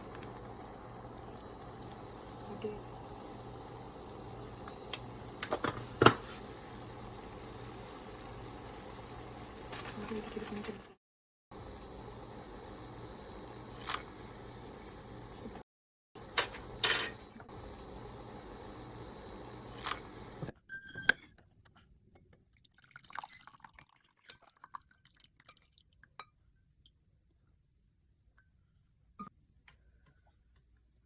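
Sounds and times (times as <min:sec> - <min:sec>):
steady hiss: 0:00.0 - 0:10.8
glass clinks: 0:16.4 - 0:17.2
liquid trickling into a glass: 0:22.6 - 0:26.1.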